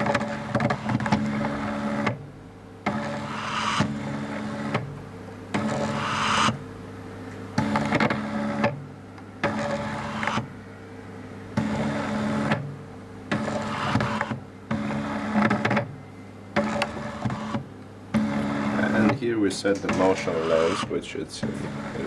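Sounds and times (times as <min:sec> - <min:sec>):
stepper motor whining: 0:05.5 - 0:06.6, 0:18.2 - 0:22.0.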